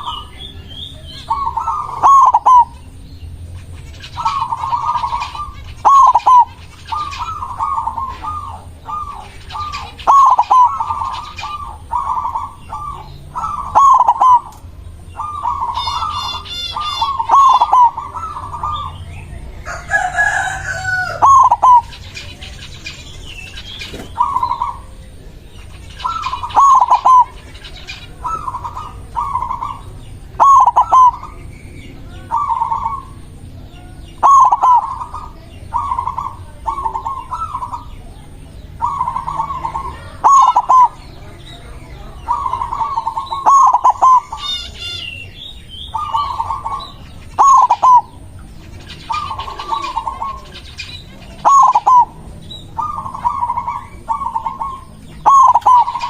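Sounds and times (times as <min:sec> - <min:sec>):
dove cooing: 0:00.0 - 0:56.0
small bird high trill: 0:15.2 - 0:19.0, 0:38.8 - 0:41.2, 0:42.3 - 0:52.2.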